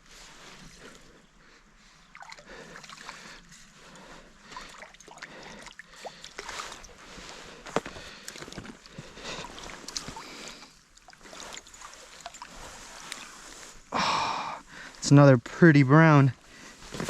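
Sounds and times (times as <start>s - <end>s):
water splashing and sloshing: 1.9s - 13.9s.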